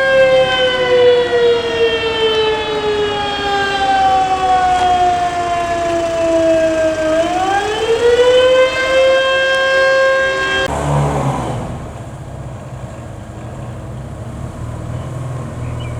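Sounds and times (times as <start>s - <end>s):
vehicle engine running: 0.0s - 9.6s, 10.2s - 15.9s
motor siren wailing: 0.0s - 10.7s.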